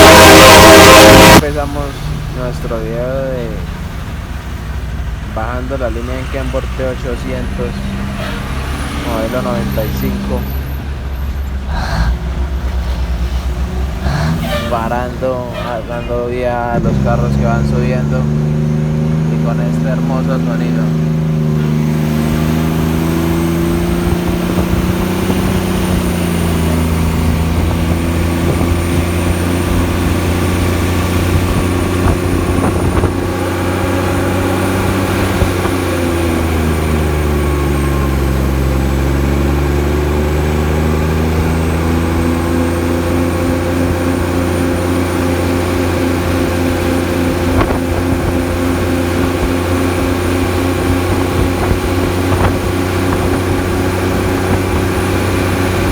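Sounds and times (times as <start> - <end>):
truck engine brake exhaust drone: 0.0 - 2.8, 20.9 - 55.9.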